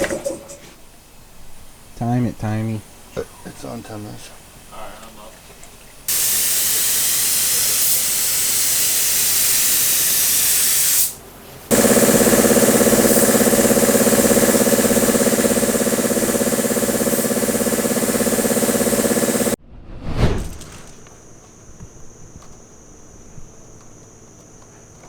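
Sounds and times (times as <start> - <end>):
compressed air hissing: 6.1 - 19.6
machine humming and pulsing: 11.7 - 19.6.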